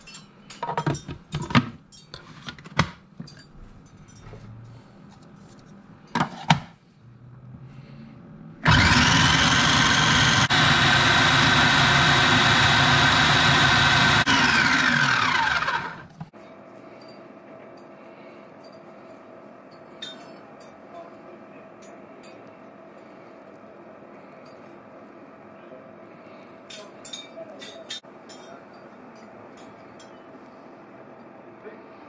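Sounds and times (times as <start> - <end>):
food processor motor blending: 8.6 - 16.2
motor spinning down whine: 8.6 - 16.2.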